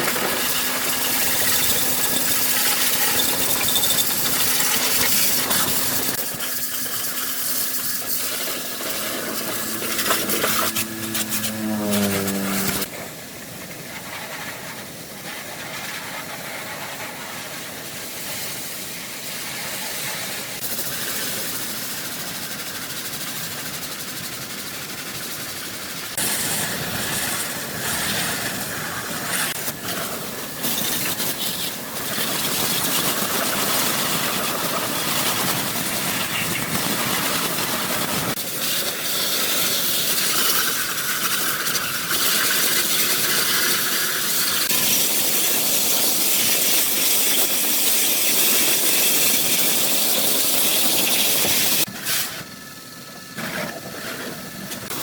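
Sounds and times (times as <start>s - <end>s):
loud hissing rush: 0.0s - 21.6s, 26.0s - 40.4s.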